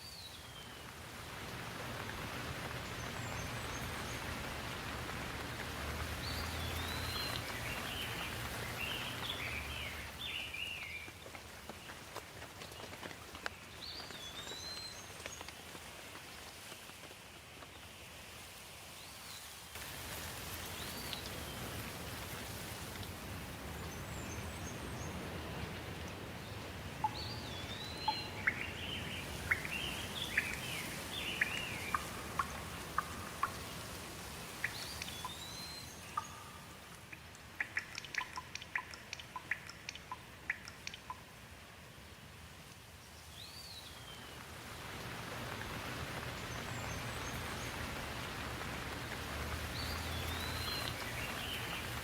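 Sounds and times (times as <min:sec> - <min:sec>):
steady rain: 0:00.0 - 0:52.0
sharp drips: 0:00.8 - 0:16.7, 0:19.8 - 0:41.6, 0:45.1 - 0:52.0
bird chirps: 0:27.0 - 0:33.7, 0:34.6 - 0:36.8.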